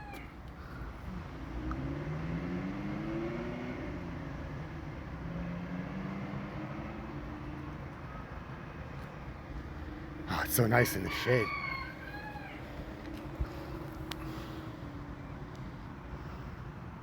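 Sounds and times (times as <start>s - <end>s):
car engine accelerating: 1.0s - 8.1s.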